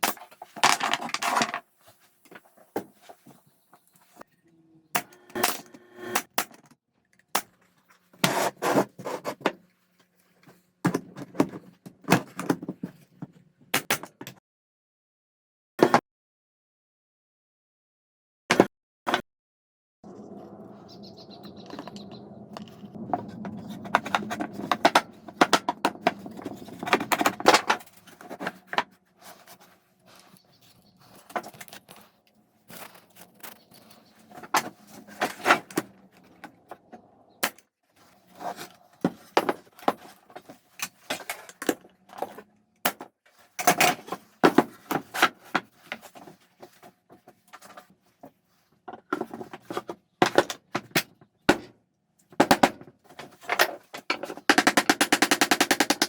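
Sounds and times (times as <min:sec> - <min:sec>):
steady low hum: 0:20.0 - 0:28.4
sharp knocks and clatters: 0:20.1 - 0:29.6.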